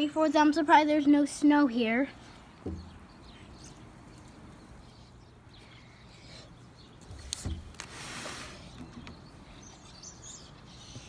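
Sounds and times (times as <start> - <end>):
faint background noise: 0.0 - 11.0.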